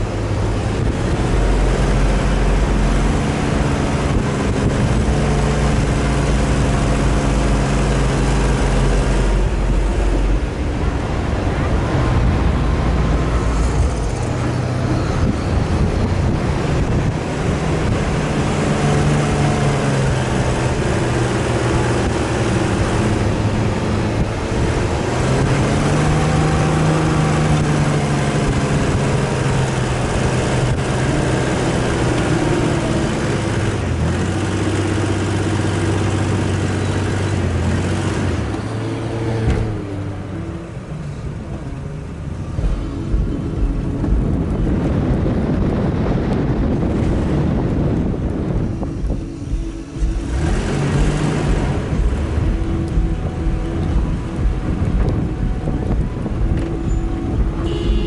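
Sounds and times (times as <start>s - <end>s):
engine running under load: 0.0s - 58.0s
low thumps: 42.3s - 58.0s.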